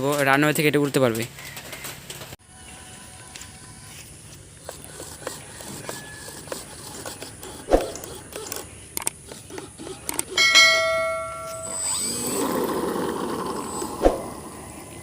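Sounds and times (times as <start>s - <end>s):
bell-like ding: 10.4s - 12.0s.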